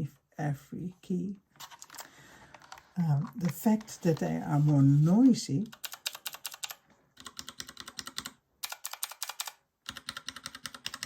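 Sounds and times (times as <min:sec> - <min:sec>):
mechanical keyboard typing: 0:05.6 - 0:11.0.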